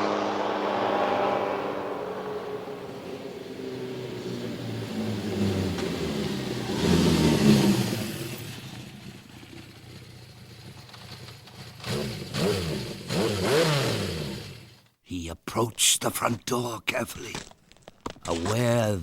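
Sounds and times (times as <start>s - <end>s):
motorcycle engine running: 0.0s - 14.8s
motorcycle engine revving: 0.0s - 14.9s.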